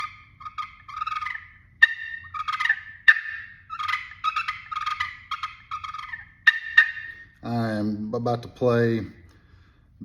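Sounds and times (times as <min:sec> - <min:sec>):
turkey call clucks: 0:00.0 - 0:07.4
turkey call yelps: 0:00.0 - 0:07.4.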